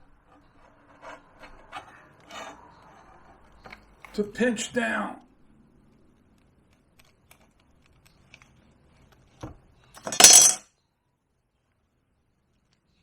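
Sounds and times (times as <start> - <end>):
sharp metallic crunch: 10.0 - 10.6.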